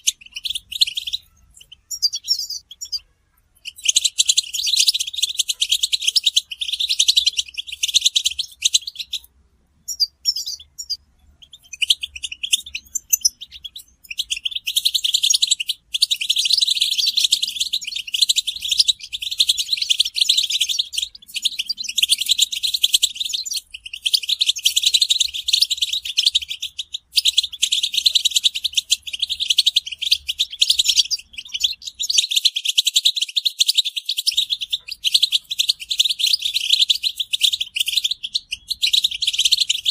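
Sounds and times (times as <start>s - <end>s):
finches twittering: 0.0s - 39.9s.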